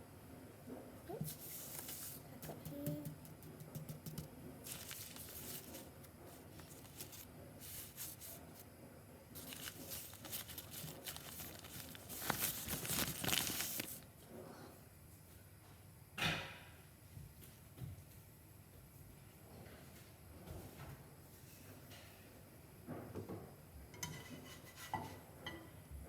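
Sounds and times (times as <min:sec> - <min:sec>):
rustling and crinkling: 0:01.1 - 0:02.3, 0:04.6 - 0:08.7, 0:09.4 - 0:14.1.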